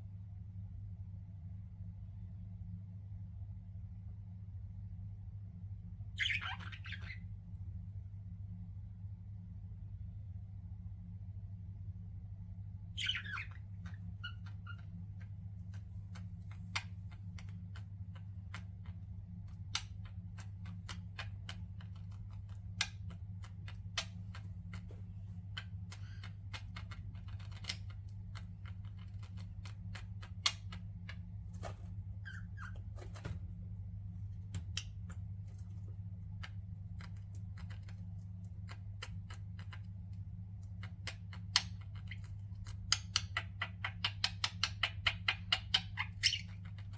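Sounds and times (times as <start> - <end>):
steady low hum: 0.0 - 46.9
budgerigar chirps: 6.2 - 7.2, 13.0 - 14.9
budgerigar clicks and taps: 15.2 - 31.3, 36.3 - 46.9.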